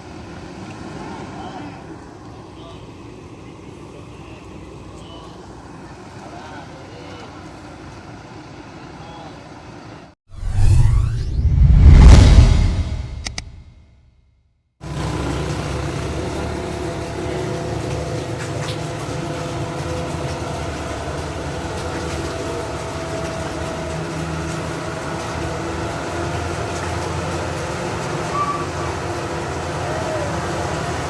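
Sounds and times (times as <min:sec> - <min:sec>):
outdoor traffic noise: 0:00.0 - 0:13.8, 0:14.8 - 0:31.0
bus engine running: 0:14.8 - 0:31.0.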